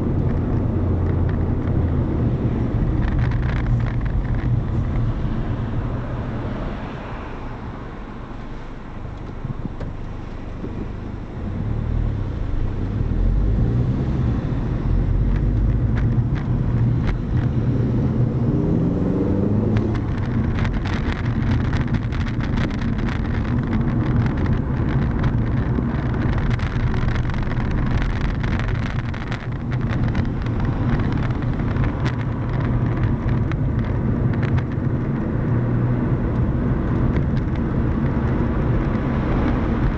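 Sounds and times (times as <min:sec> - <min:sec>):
road noise: 0:00.0 - 0:39.9
small clicks or rattles: 0:00.2 - 0:01.9, 0:02.6 - 0:05.2, 0:15.1 - 0:17.6, 0:19.6 - 0:35.3, 0:36.3 - 0:39.9
car engine running: 0:08.1 - 0:39.9.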